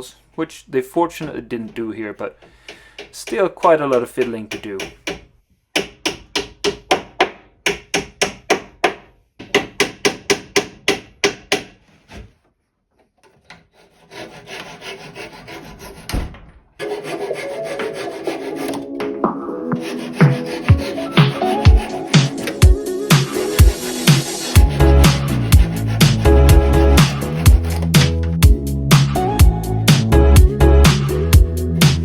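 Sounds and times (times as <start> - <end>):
hand tool rasping wood: 13.2 - 16.1, 16.8 - 18.8, 19.7 - 28.4
thump: 16.1 - 16.6
music: 16.8 - 32.0.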